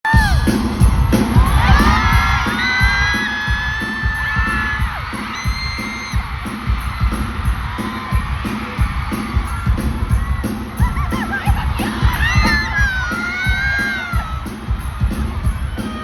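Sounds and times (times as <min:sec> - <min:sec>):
fans screaming: 0:00.0 - 0:16.0
heavy bass drum beat: 0:00.0 - 0:16.0
live pop music: 0:00.0 - 0:16.0.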